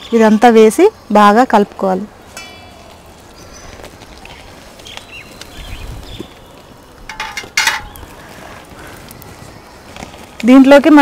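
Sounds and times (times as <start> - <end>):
utensil clatter: 7.1 - 8.0.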